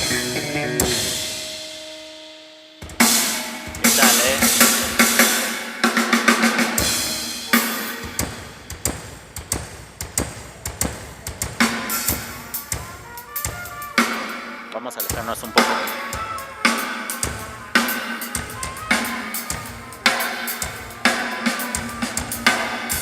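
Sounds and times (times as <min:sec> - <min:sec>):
drum kit playing: 0:00.0 - 0:23.0
band holding a note: 0:02.9 - 0:05.9, 0:11.6 - 0:23.0.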